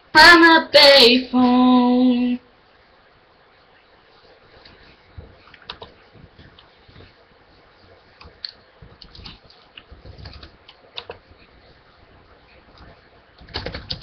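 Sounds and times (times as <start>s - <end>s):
keyboard and mouse clicks: 5.4s - 6.7s, 8.2s - 11.3s, 12.7s - 14.0s.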